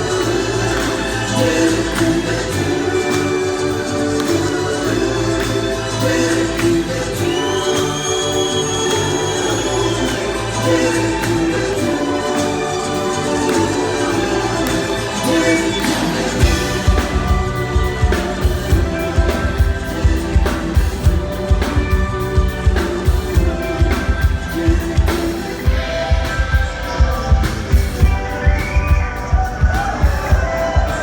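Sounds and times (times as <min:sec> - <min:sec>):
live band music: 0:00.0 - 0:31.0
kick drum and bass beat: 0:16.4 - 0:31.0.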